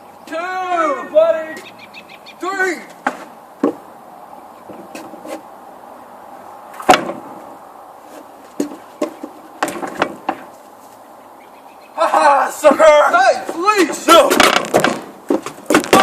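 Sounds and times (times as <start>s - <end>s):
sharp knocks and thumps: 2.9s - 3.8s, 4.6s - 5.4s, 6.8s - 7.4s, 8.2s - 10.6s, 13.4s - 16.0s.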